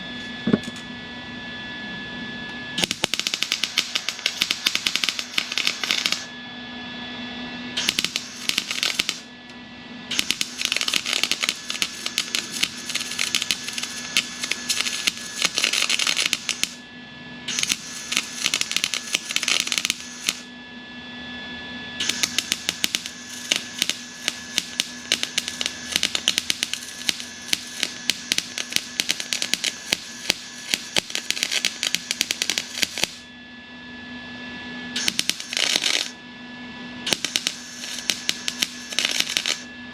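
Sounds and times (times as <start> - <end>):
steady low hum: 0.0 - 39.9
mig welder crackling: 2.8 - 6.4, 7.8 - 9.3, 10.1 - 16.9, 17.5 - 20.5, 22.0 - 33.3, 35.0 - 36.2, 37.1 - 39.7.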